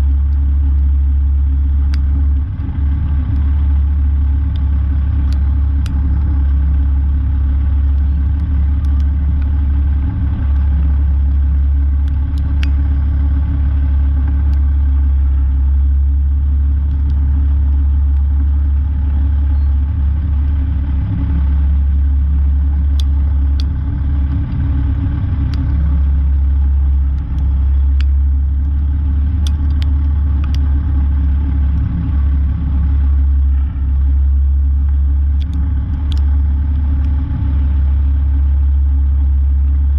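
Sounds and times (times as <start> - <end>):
truck diesel engine running: 0.0 - 39.9
faint clicks: 26.6 - 30.8, 34.8 - 37.6.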